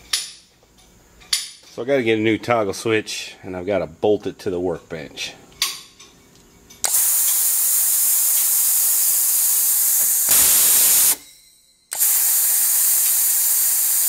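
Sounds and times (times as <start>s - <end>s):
compressed air hissing: 6.9s - 11.2s, 11.9s - 14.0s.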